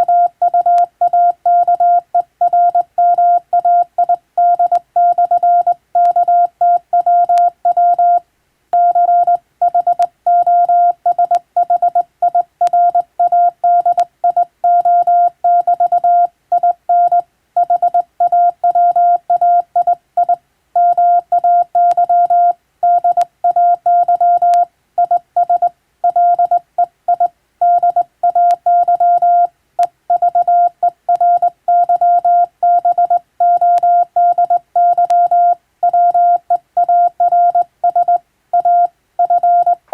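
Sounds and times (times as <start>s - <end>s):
morse code tone: 8.8s - 29.5s, 30.1s - 39.9s.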